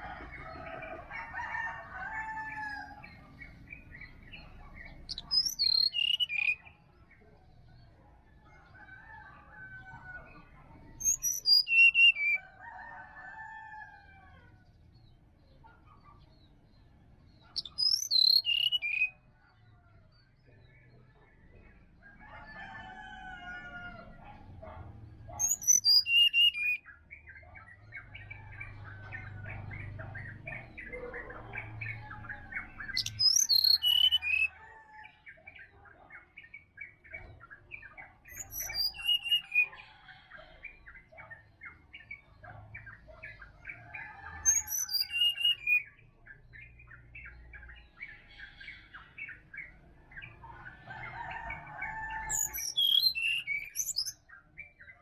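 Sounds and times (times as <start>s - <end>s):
small birds chirping: 0.0s - 13.5s, 14.6s - 55.0s
bird singing high falling phrases: 3.0s - 6.7s.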